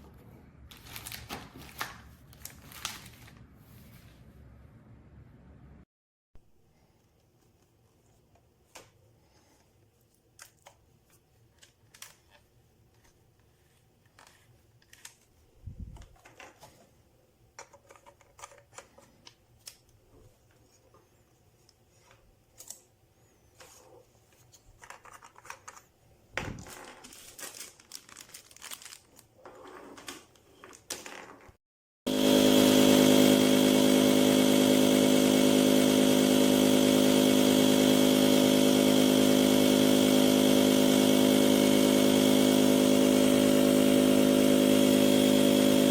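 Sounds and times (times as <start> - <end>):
electric air pump running: 32.1 - 45.9.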